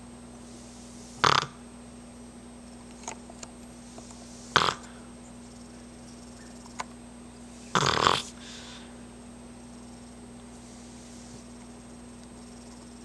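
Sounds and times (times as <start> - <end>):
dog snoring: 1.1 - 1.6, 4.5 - 5.0, 7.7 - 8.5.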